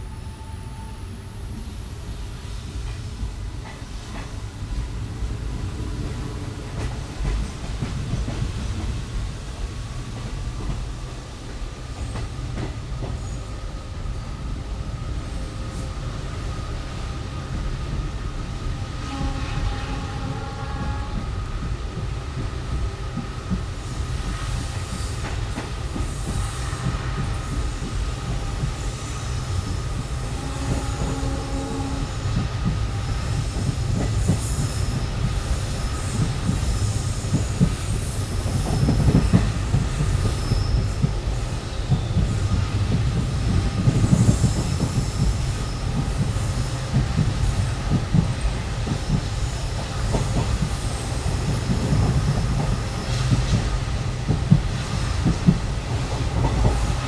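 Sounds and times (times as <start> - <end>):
train rumble: 0.0 - 57.0
high wheel squeal: 28.8 - 32.3, 33.4 - 42.6.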